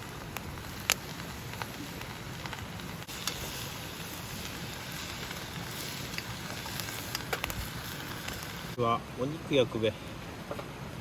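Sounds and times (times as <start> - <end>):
campfire burning: 0.0 - 11.0
fire crackles: 0.0 - 11.0.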